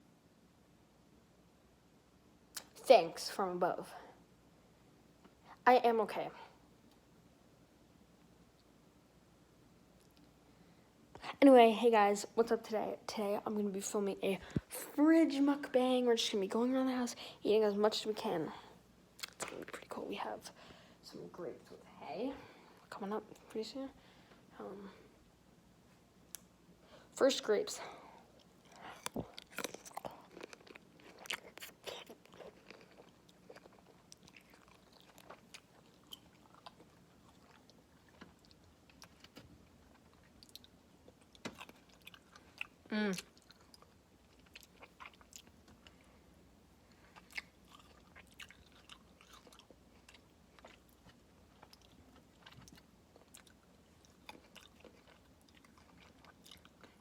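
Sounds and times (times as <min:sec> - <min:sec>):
chewing grapes: 0:19.2 - 0:20.0, 0:27.8 - 0:46.2, 0:46.9 - 0:57.0.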